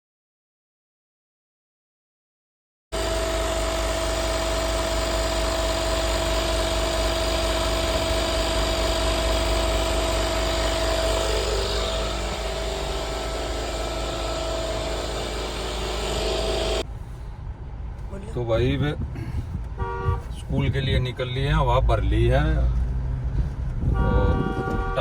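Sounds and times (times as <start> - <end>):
air compressor running: 3.0 - 16.9.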